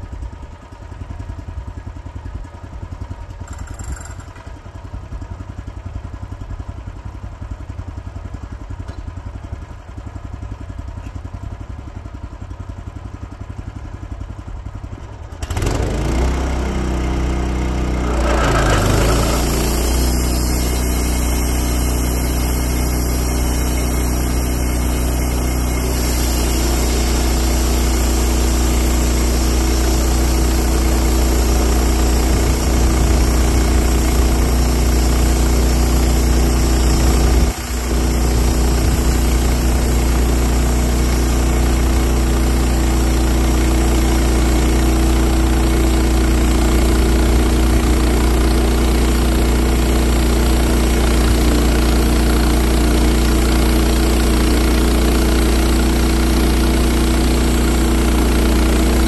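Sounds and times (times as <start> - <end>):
sawmill engine running: 15.4 - 59.0.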